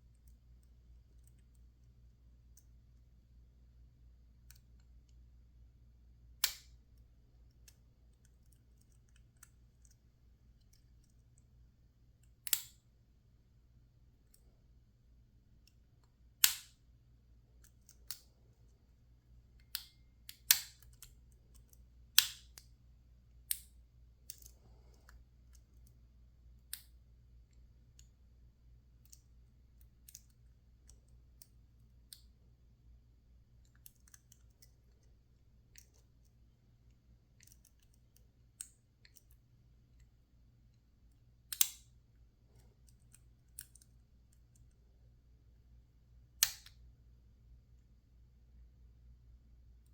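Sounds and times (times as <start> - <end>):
lock picks clicking in padlock: 12.2 - 12.8, 41.5 - 42.0.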